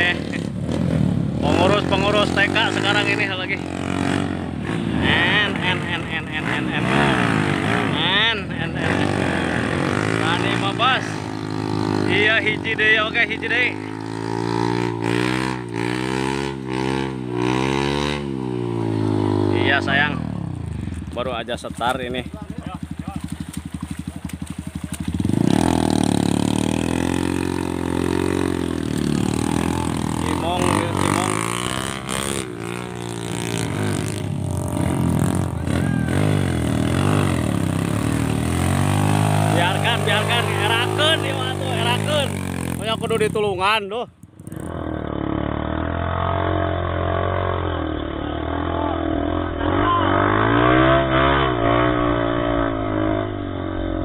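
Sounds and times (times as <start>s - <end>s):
motorcycle engine idling and revving: 0.0s - 54.0s.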